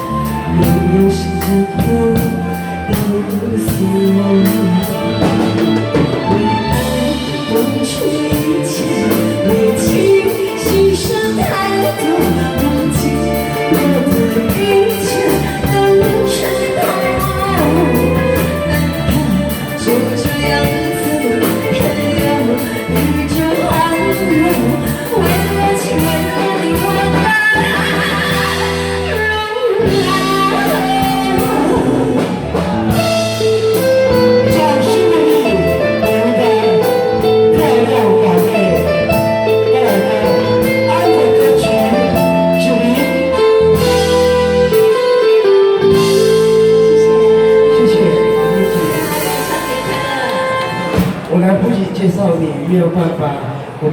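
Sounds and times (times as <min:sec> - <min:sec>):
person singing: 0:00.0 - 0:51.2
band with bass and guitar: 0:00.0 - 0:53.9.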